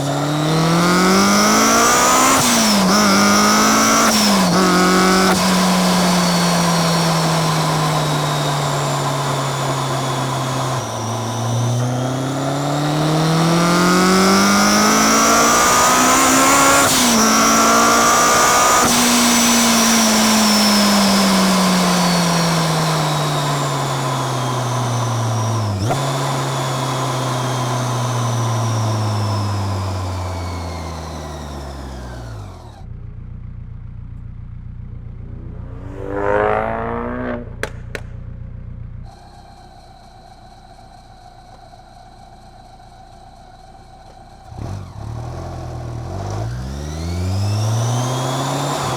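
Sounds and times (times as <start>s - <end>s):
car engine revving: 0.0s - 32.8s, 34.8s - 39.2s, 44.4s - 48.9s
supercharger whine: 0.0s - 48.9s
car engine idling: 32.4s - 45.0s.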